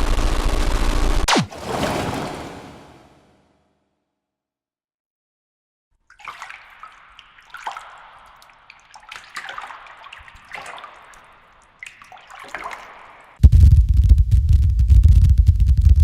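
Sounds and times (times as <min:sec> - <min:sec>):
water splashing and sloshing: 0:01.3 - 0:03.4, 0:06.0 - 0:13.4
water dripping: 0:06.0 - 0:13.4.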